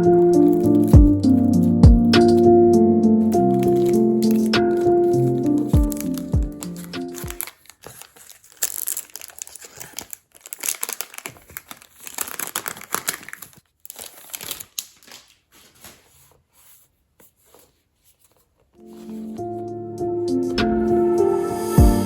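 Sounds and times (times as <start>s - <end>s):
packaging crinkling and rustling: 0.0s - 2.6s, 3.3s - 16.5s
background music: 0.0s - 7.4s, 18.8s - 22.0s.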